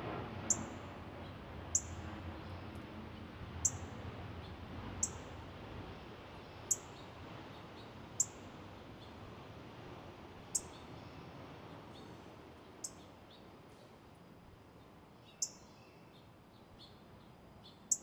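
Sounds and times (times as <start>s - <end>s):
outdoor background hiss: 0.0s - 18.0s
songbird high call notes: 15.3s - 16.0s.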